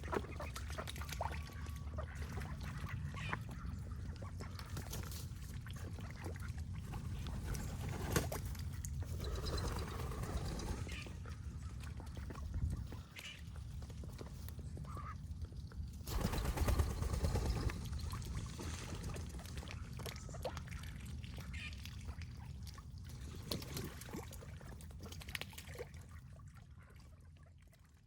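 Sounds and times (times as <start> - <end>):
water splashing and trickling: 0.0 - 28.0.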